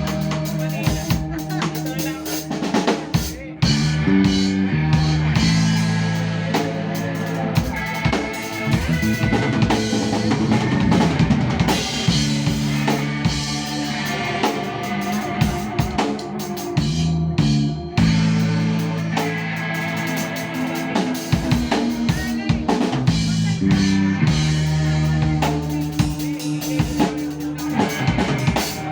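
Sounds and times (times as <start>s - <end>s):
drum kit beating: 0.0s - 28.9s
held bass notes: 0.0s - 28.9s
live band playing: 0.0s - 28.9s.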